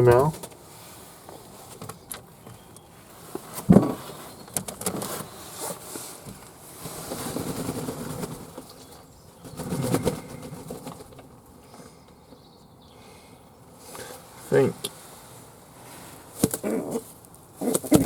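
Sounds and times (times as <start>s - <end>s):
doves wing flapping: 6.8s - 11.3s.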